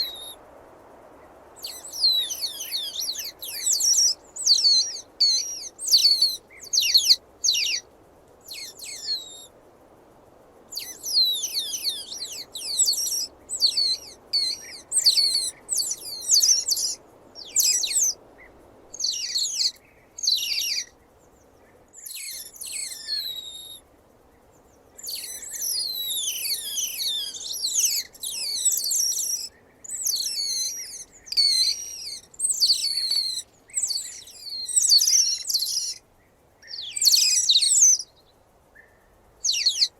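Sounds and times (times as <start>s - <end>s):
otter chirping: 0.0s - 0.4s, 1.6s - 7.8s, 8.5s - 9.5s, 10.8s - 18.2s, 19.0s - 20.9s, 22.0s - 23.8s, 25.0s - 36.0s, 36.7s - 38.0s, 39.4s - 39.9s
faint steady hiss: 0.0s - 39.9s.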